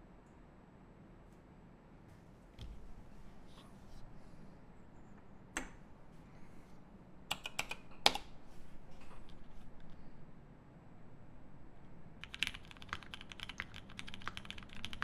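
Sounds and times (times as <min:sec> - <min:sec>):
mechanical keyboard typing: 0:07.3 - 0:10.0, 0:12.2 - 0:15.0.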